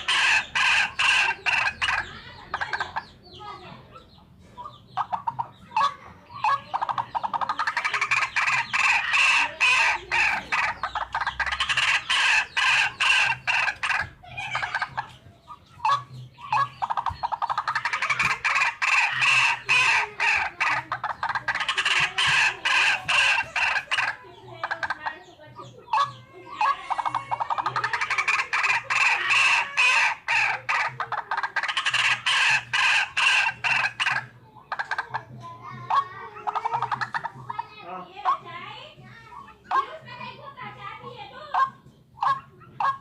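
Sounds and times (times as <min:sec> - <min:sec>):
waterhen calls: 0:00.0 - 0:03.0, 0:04.8 - 0:35.2.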